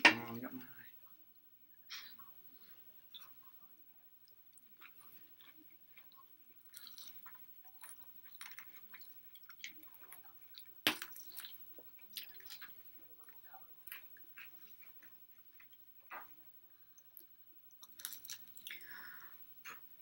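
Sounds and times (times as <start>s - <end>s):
wet chewing and lip smacks: 4.2s - 20.0s.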